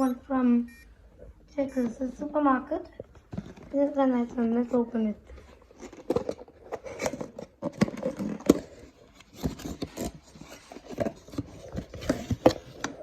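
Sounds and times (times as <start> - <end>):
box being handled: 3.1 - 13.0.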